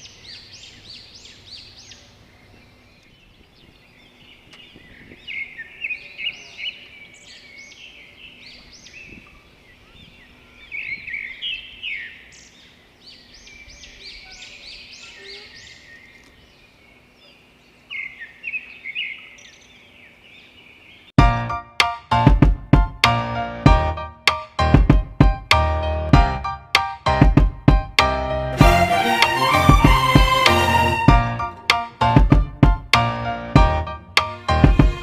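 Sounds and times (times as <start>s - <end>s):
birds chirping: 0.0s - 21.2s.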